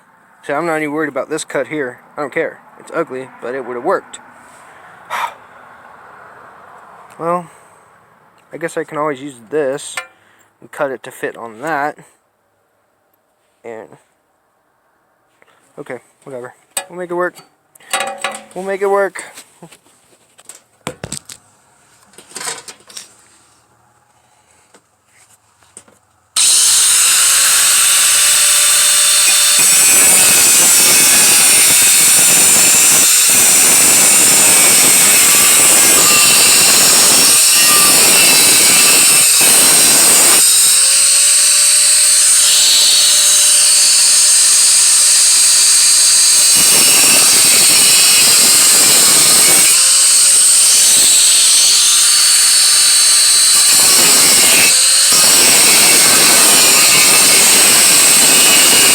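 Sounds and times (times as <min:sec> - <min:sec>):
power tool cutting sheet metal: 0:26.4 - 0:58.9.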